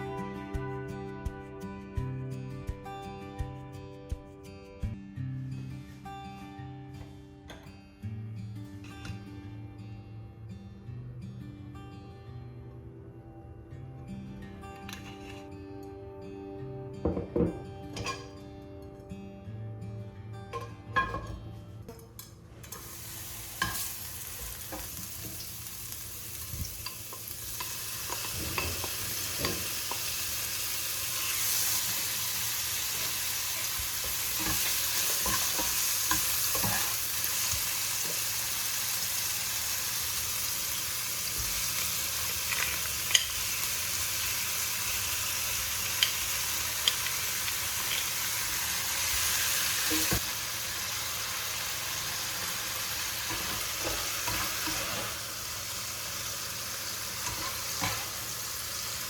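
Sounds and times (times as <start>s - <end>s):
food sizzling in a hot pan: 22.7s - 59.0s.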